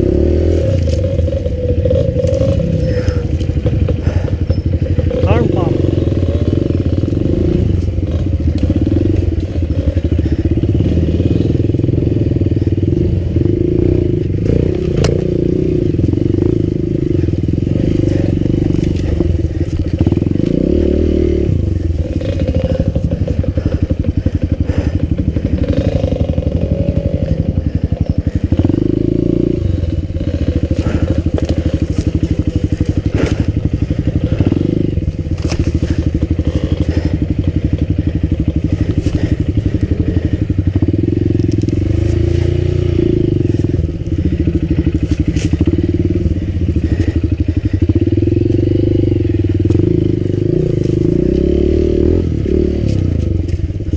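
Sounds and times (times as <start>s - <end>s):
motorcycle engine revving: 0.0s - 53.9s
motorcycle knocks and clatter: 14.4s - 16.6s, 29.9s - 39.9s, 49.6s - 50.0s.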